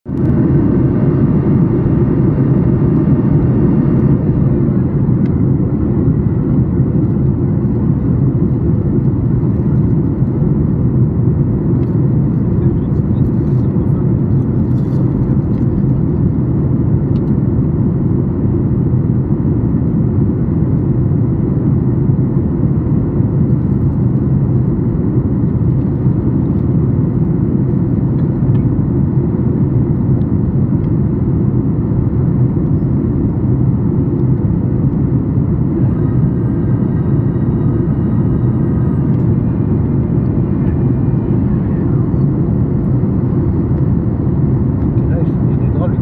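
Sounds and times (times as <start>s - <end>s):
airplane cabin rumble: 0.1s - 46.0s
faint steady hum: 0.1s - 46.0s.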